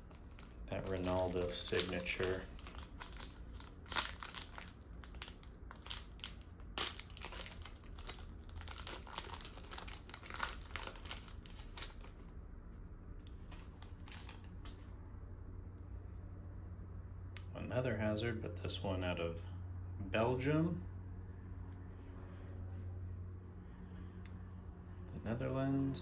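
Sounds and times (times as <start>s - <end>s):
foil wrapper crinkling: 0.0s - 12.2s, 13.2s - 14.8s.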